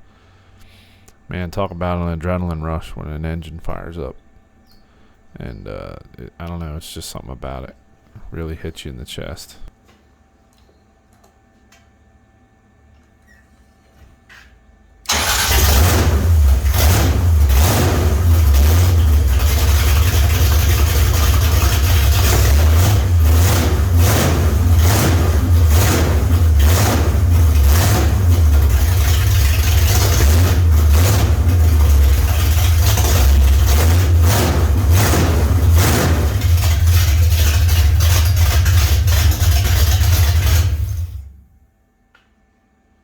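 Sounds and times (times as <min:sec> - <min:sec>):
loud engine revving: 0:15.1 - 0:41.3.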